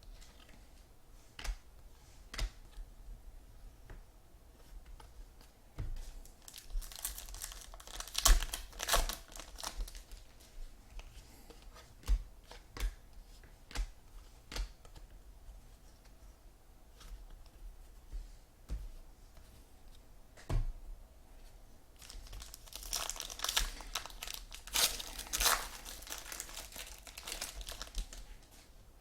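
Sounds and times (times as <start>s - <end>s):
wrapper tearing and crinkling: 6.4s - 10.3s, 22.0s - 28.3s.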